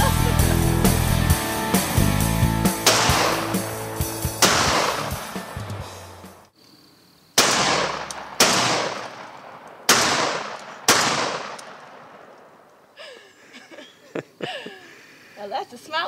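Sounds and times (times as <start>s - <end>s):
shotgun shots with echo: 2.8s - 3.8s, 4.4s - 5.6s, 7.4s - 12.3s.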